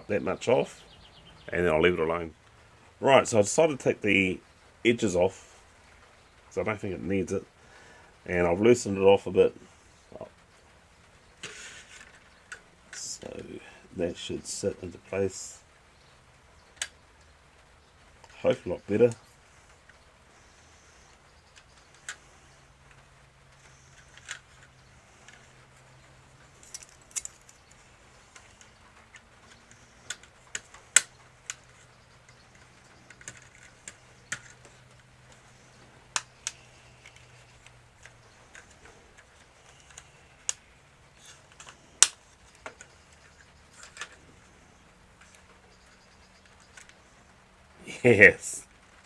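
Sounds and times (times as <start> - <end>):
plastic toy parts clicking: 23.6 - 25.6, 26.6 - 44.3.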